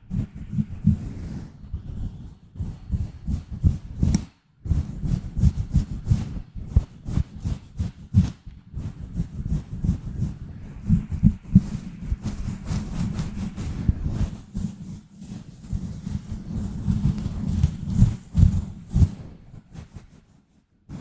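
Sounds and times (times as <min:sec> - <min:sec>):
scratching on microphone: 0:00.0 - 0:21.0.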